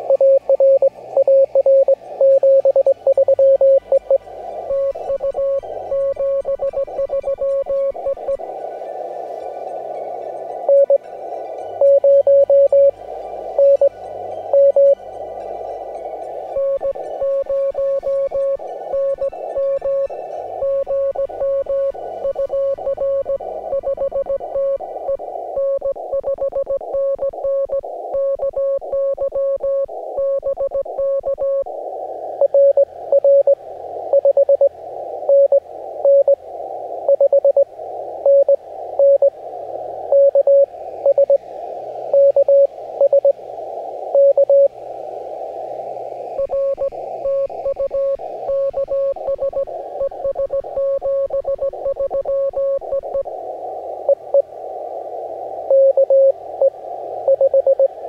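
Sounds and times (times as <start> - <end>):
radio receiver hiss: 0.0 - 58.0
morse code tone: 10.7 - 11.0, 11.8 - 12.9, 14.5 - 15.0.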